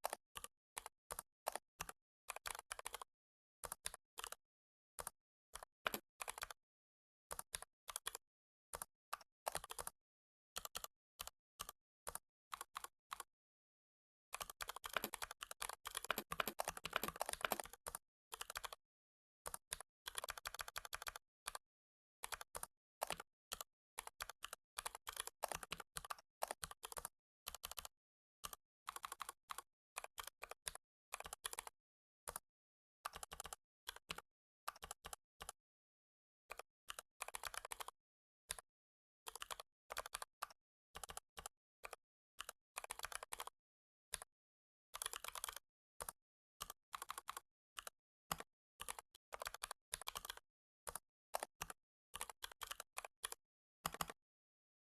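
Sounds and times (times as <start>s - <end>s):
typing on computer keyboard: 0.0s - 3.1s, 5.0s - 6.6s, 7.3s - 8.2s, 8.8s - 10.0s, 10.6s - 13.3s, 14.4s - 18.8s, 19.5s - 21.6s, 22.2s - 32.4s, 33.1s - 35.6s, 36.9s - 38.0s, 39.4s - 43.5s, 45.0s - 54.2s.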